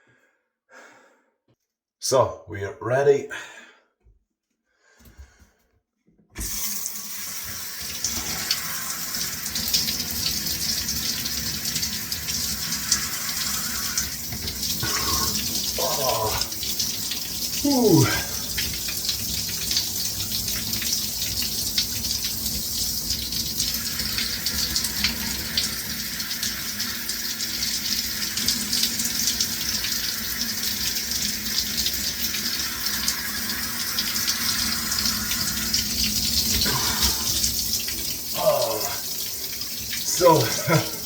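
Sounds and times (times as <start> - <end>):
shower water splashing: 6.4 - 41.0
short vocal sounds: 14.8 - 16.5, 17.6 - 18.4, 38.4 - 39.0.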